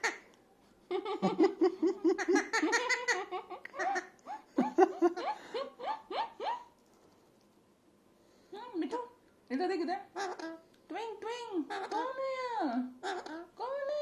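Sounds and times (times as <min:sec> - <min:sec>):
parrot mimicking laughter: 0:00.9 - 0:06.7, 0:10.1 - 0:10.6, 0:11.6 - 0:12.2, 0:13.0 - 0:13.6.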